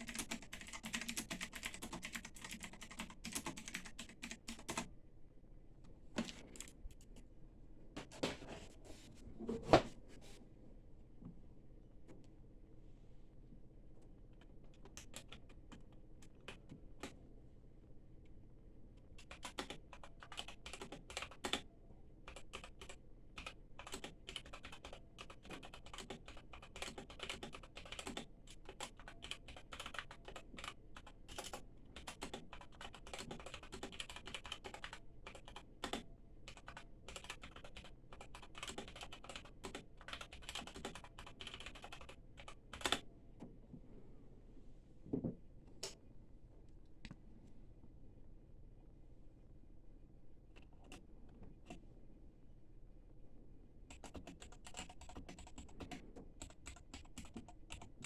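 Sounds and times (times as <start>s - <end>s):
mechanical keyboard typing: 0.0s - 4.9s, 14.3s - 17.2s, 19.2s - 21.7s, 22.3s - 43.0s, 53.9s - 58.0s.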